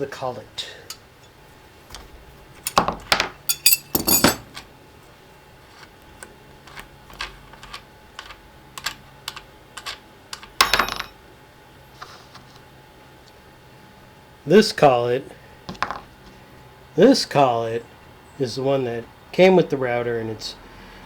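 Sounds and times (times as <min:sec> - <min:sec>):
metal tools clinking: 0:00.8 - 0:02.0, 0:02.6 - 0:04.7, 0:07.2 - 0:11.1
short metallic ring: 0:03.5 - 0:04.4.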